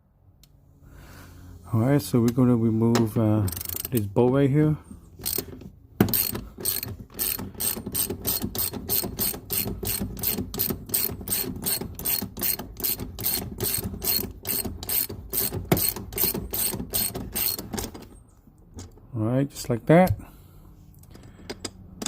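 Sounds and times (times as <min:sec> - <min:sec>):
ratchet wrench clicking: 0:03.5 - 0:04.0, 0:05.2 - 0:17.9.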